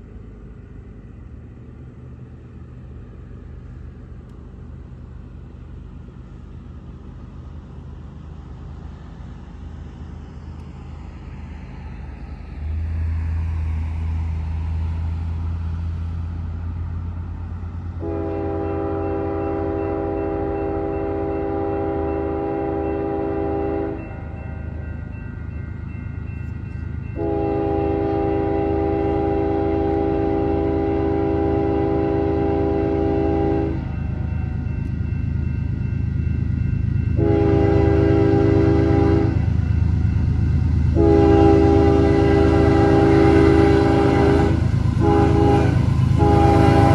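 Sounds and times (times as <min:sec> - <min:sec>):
diesel locomotive engine: 0:00.0 - 0:46.9
locomotive air horn blasts: 0:18.0 - 0:24.0, 0:27.2 - 0:33.9, 0:37.2 - 0:39.5, 0:41.0 - 0:46.9.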